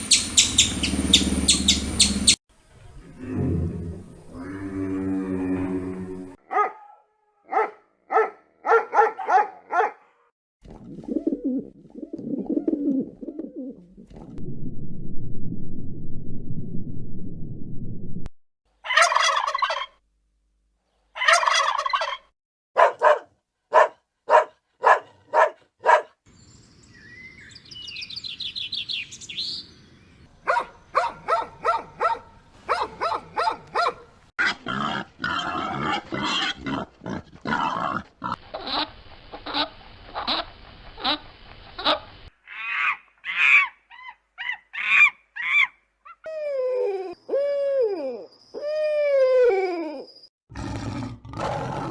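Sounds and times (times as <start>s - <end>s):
turkeys gobbling: 0.0s - 2.4s, 18.9s - 20.0s, 21.2s - 22.3s
domestic fowl calling: 18.8s - 20.0s, 21.2s - 22.3s, 38.6s - 43.8s.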